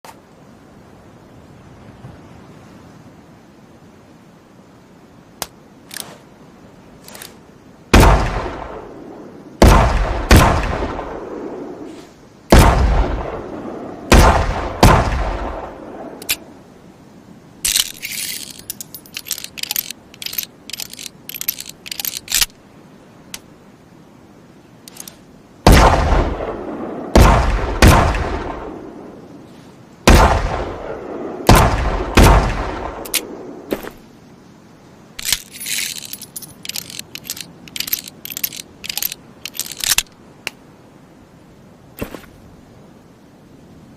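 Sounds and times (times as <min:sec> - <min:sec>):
rapid small metallic clicks: 0:17.7 - 0:22.5, 0:35.2 - 0:40.1.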